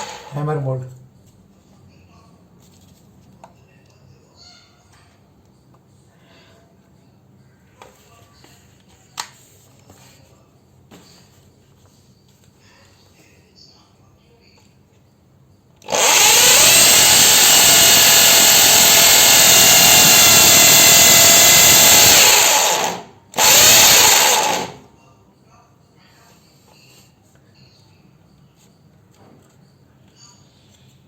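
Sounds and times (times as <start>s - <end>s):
hammer drill running: 0.0s - 0.5s, 15.8s - 24.8s.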